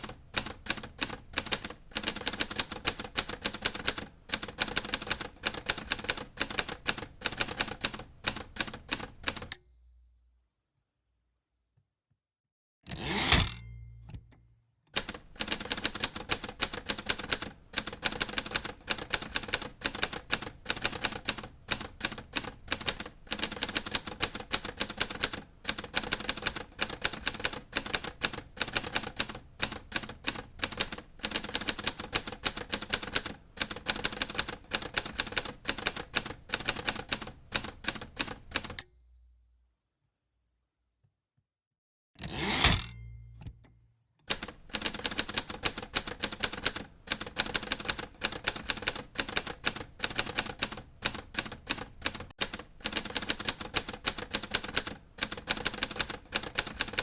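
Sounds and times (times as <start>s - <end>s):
typewriter keystrokes: 0.0s - 9.5s, 15.0s - 38.8s, 44.3s - 57.0s
typewriter bell ding: 9.5s - 11.3s, 13.4s - 14.1s, 38.7s - 40.6s, 42.7s - 43.4s
typewriter carriage return clatter: 15.0s - 38.8s, 44.3s - 57.0s.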